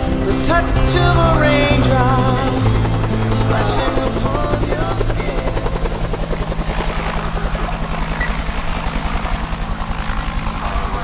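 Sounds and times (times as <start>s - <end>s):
drone motors humming: 0.0s - 11.0s.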